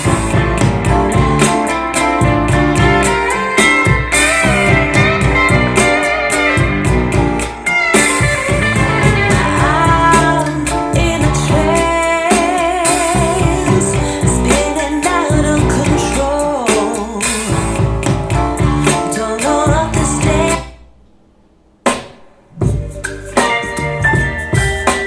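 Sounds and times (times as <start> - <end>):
song with guitar and drums: 0.0 - 20.7, 21.9 - 25.0
person singing: 7.7 - 17.6, 18.8 - 20.7.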